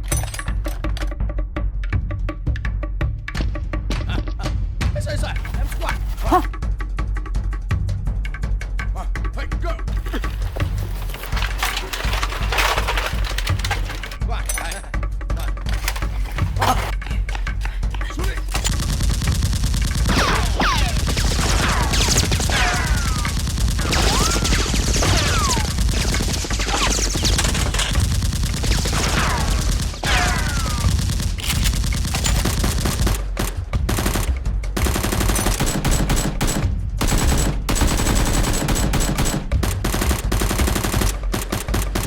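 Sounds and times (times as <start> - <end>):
rapid automatic gunfire: 18.5 - 42.0.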